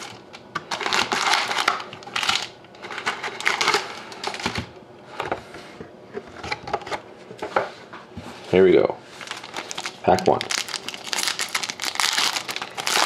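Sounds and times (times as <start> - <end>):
foil wrappers crinkling: 0.0 - 4.6, 9.1 - 13.0.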